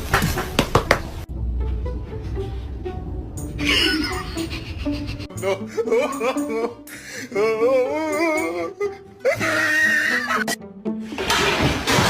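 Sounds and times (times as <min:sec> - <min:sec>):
music with wailing voice: 0:01.8 - 0:10.6.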